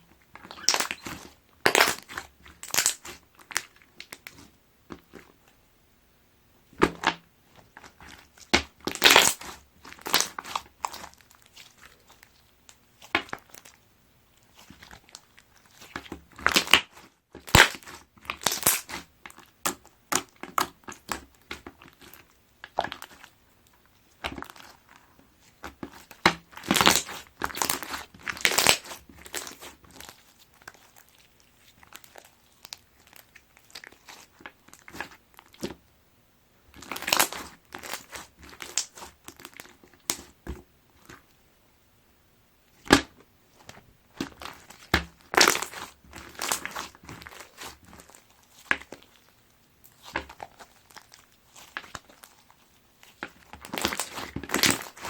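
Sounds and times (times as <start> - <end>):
slime crackling and crunching: 0.3 - 5.3, 6.8 - 13.8, 14.4 - 23.4, 24.1 - 35.8, 36.7 - 40.4, 42.8 - 55.0.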